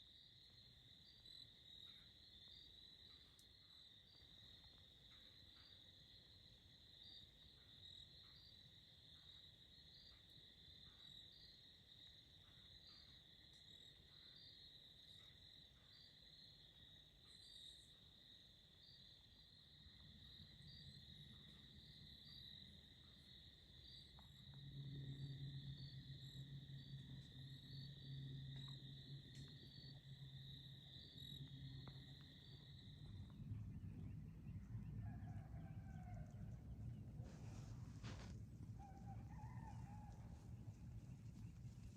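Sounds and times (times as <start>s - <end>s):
insect trill: 0.0s - 36.9s, 38.1s - 41.9s
low hum: 24.0s - 41.9s.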